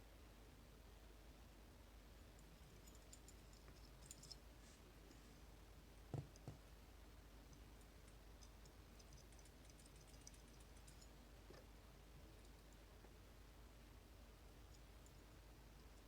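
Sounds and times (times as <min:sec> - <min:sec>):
soft knocks: 0:06.1 - 0:06.6.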